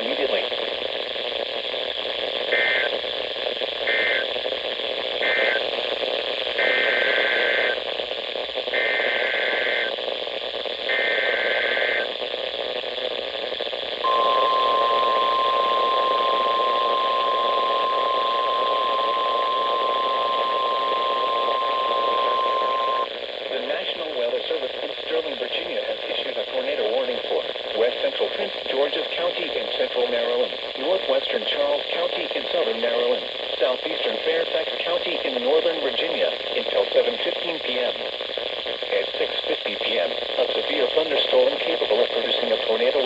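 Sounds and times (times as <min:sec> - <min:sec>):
radio static hiss: 0:00.0 - 0:43.0
digital data bursts: 0:14.0 - 0:23.1
steady warning alarm tone: 0:14.0 - 0:23.1.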